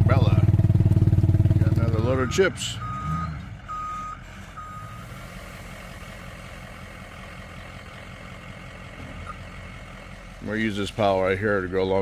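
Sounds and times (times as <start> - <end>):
truck engine rumbling: 0.0 - 12.0
truck backup alarm beeping: 1.7 - 6.2, 9.1 - 9.6.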